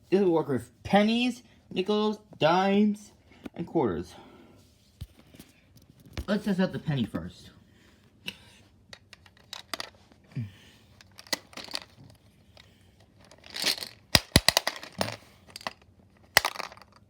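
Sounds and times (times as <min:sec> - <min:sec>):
small clicks and handling noise: 0:08.9 - 0:10.1, 0:10.9 - 0:17.0.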